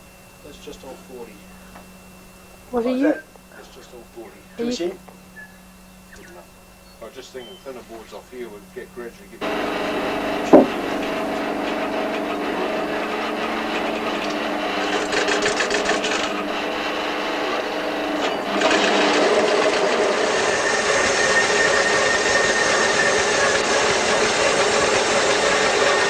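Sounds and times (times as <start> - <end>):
bandsaw humming: 0.0 - 26.0
saw blade rasping through wood: 9.4 - 26.0
sharp knock: 10.5 - 11.1.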